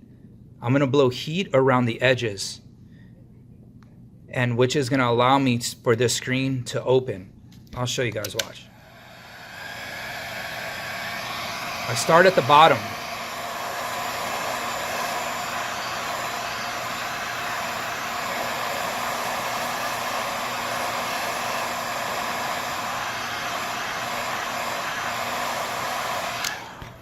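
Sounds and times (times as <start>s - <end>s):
heat gun blowing hot air: 8.7s - 27.0s.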